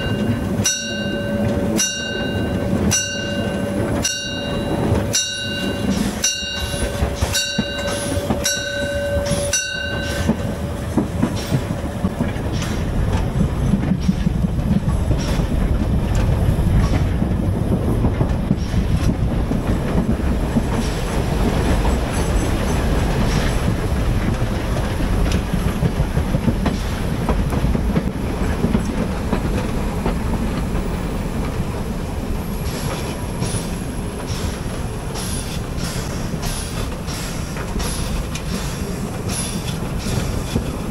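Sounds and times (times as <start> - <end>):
locomotive bell ringing: 0.0 - 11.7
train rumble: 0.0 - 40.9
wheels clacking over rail joints: 0.0 - 40.9.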